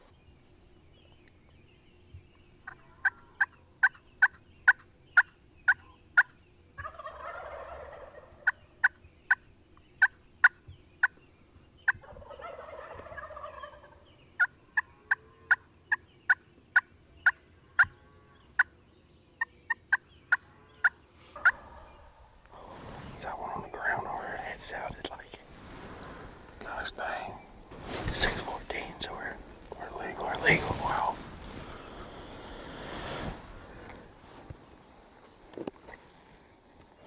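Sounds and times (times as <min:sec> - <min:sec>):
turkey gobbling: 0:06.2 - 0:09.4, 0:11.9 - 0:14.9, 0:21.4 - 0:22.9
turkey yelps: 0:06.8 - 0:08.6, 0:12.0 - 0:14.5.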